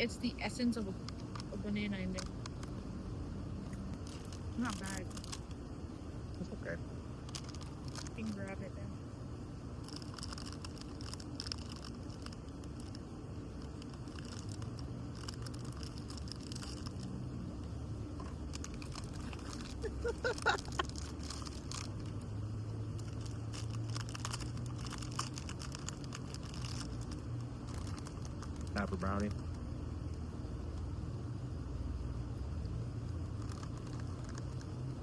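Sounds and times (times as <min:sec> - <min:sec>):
steady low hum: 0:00.0 - 0:35.0
packaging crinkles: 0:03.9 - 0:05.6, 0:07.2 - 0:08.3, 0:09.8 - 0:17.3, 0:18.1 - 0:30.2, 0:33.0 - 0:35.0
people chewing food: 0:13.6 - 0:17.2, 0:18.2 - 0:22.2.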